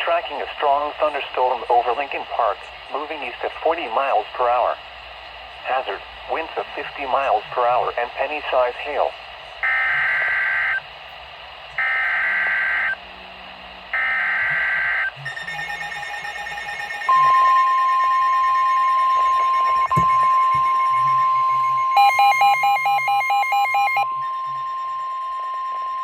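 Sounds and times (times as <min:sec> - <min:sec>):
steady warning alarm tone: 0:08.9 - 0:10.9, 0:11.5 - 0:26.0
fast pulsing beep: 0:14.0 - 0:26.0
alert beeping: 0:17.1 - 0:24.0.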